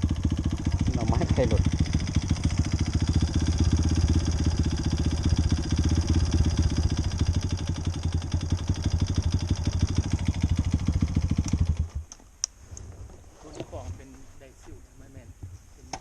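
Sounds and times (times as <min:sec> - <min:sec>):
engine idling chugging: 0:00.0 - 0:12.1.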